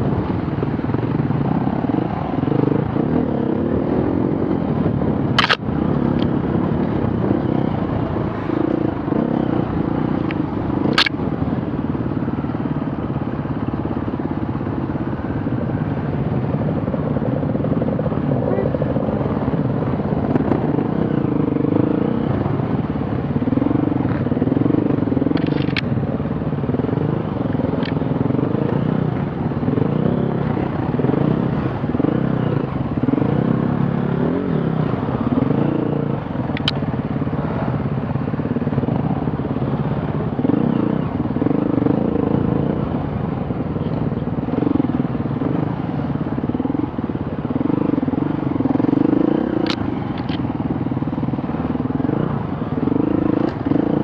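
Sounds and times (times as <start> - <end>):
sharp clicks or knocks: 5.4 - 5.6, 10.3 - 11.2
off-road vehicle engine revving: 47.5 - 50.4.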